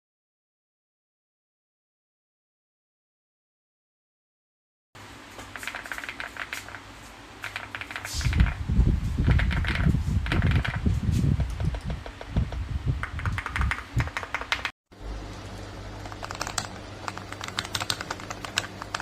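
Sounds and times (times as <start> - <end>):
mechanical keyboard typing: 5.5 - 6.8, 7.4 - 8.6, 9.2 - 10.8, 13.0 - 14.8, 16.0 - 19.0.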